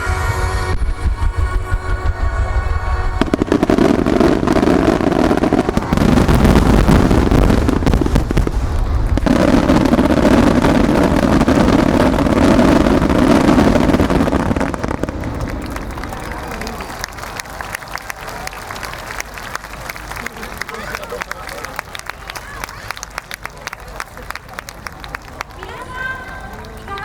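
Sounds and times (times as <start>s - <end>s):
fireworks booms and crackle: 0.3s - 18.0s.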